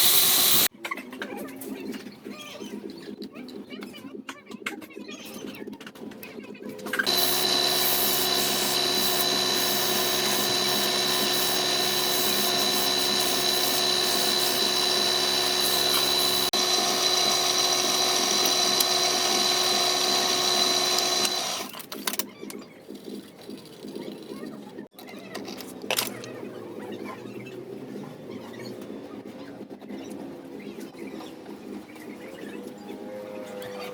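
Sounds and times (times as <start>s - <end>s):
power tool motor whining: 0.0s - 0.7s, 7.0s - 21.8s.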